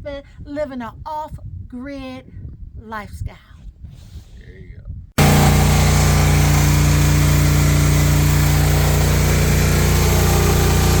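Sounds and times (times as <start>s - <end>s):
loud steady engine running: 5.2s - 11.0s.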